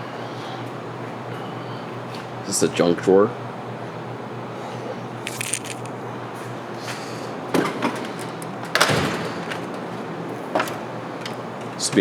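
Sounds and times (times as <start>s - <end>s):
tools clattering: 5.2s - 6.0s
metal drawers shutting: 7.5s - 12.0s.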